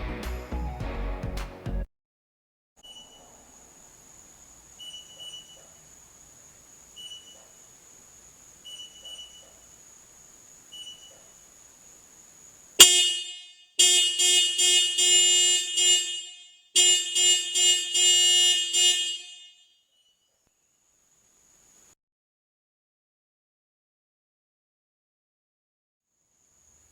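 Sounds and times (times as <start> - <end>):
faint short beeps: 2.8 - 3.3, 4.8 - 5.7, 7.0 - 7.5, 8.6 - 9.6, 10.7 - 11.2
car alarm horn honking: 12.8 - 19.7.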